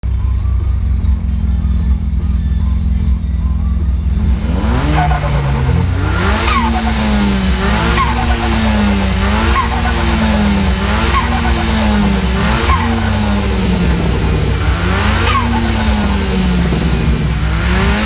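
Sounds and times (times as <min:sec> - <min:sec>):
car engine revving: 0:03.8 - 0:18.0.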